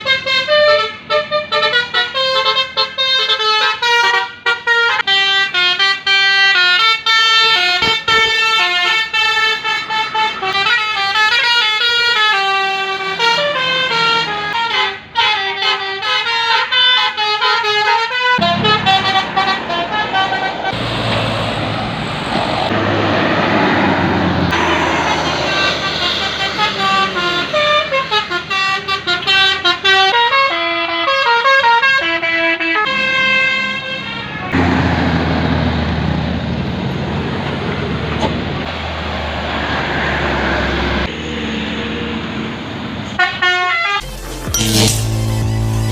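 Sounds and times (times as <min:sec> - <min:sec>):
multi-tone bus horns playing tunes: 0:00.0 - 0:20.8, 0:24.5 - 0:34.8, 0:43.0 - 0:45.9
heavy engine noise: 0:17.8 - 0:30.9, 0:34.1 - 0:45.9.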